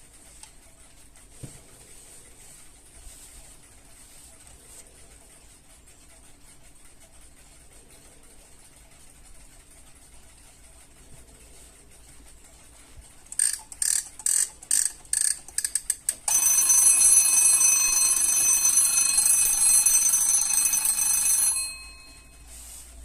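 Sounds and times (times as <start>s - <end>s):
alarm clock ringing: 13.4s - 22.5s.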